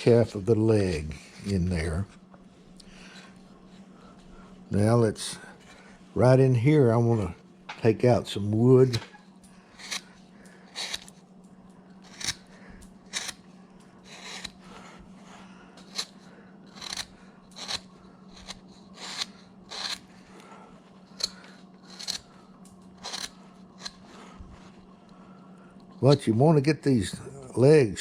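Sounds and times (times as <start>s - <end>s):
gouge cutting wood: 9.8s - 10.1s, 10.7s - 11.1s, 12.0s - 12.5s, 13.1s - 13.4s, 14.0s - 14.9s, 16.7s - 20.1s, 21.2s - 22.2s, 23.0s - 24.3s.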